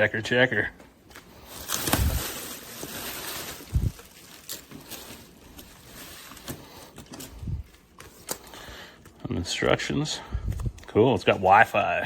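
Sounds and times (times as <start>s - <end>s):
packaging rustling: 1.0s - 9.2s.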